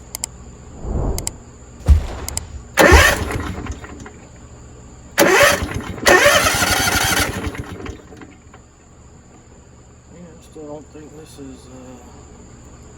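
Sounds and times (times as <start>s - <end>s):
engine cranked by electric starter: 1.8s - 4.2s, 5.2s - 8.5s.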